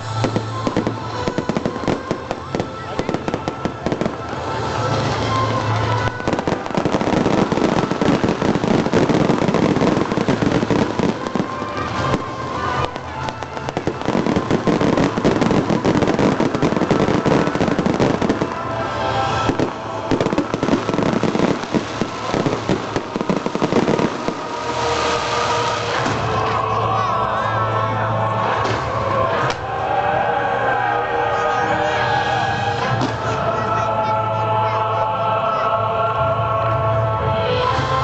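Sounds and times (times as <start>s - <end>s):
firecrackers crackling: 0.0s - 34.9s
music playing: 0.0s - 38.0s.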